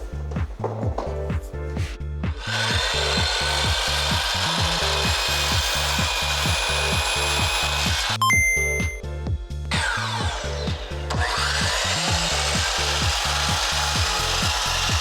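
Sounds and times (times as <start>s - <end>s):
power saw cutting plank: 2.3s - 8.2s, 9.7s - 15.0s.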